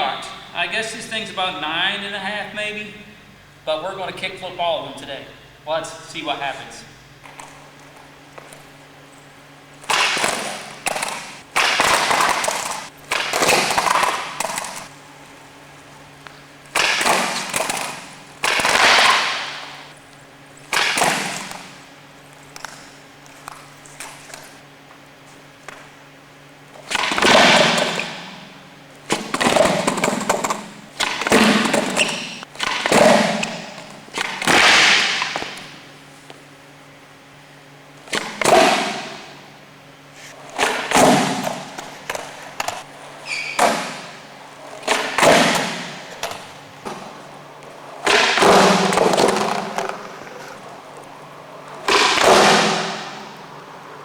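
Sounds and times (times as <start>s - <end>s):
skateboards hitting pavement: 9.7s - 24.6s, 26.7s - 35.9s, 38.0s - 39.4s, 40.2s - 54.0s.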